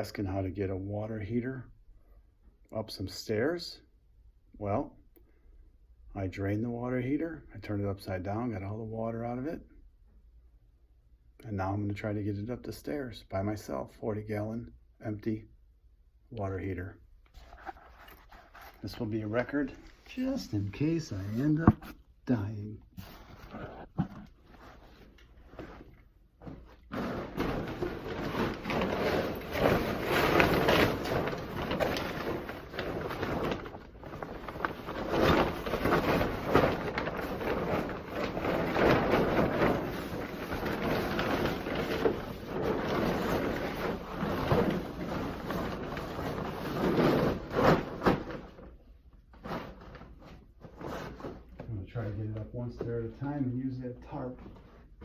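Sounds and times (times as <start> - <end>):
tarp rustling and scraping: 17.3 - 55.0.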